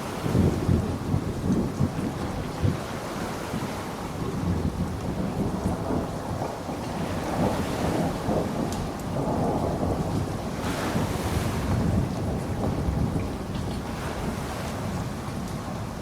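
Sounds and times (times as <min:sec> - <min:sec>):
ocean surf: 0:00.0 - 0:09.6, 0:10.3 - 0:16.0
rolling thunder: 0:00.0 - 0:16.0
steady rain: 0:00.0 - 0:16.0.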